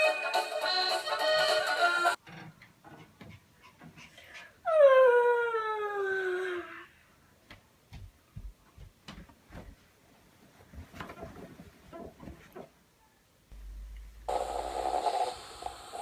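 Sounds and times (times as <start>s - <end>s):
faint low sounds: 13.0s - 14.3s.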